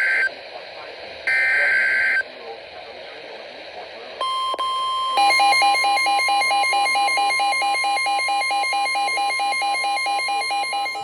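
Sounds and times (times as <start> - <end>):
steady single alarm tone: 4.2 - 11.0
two-pitch alarm beeps: 4.2 - 11.0.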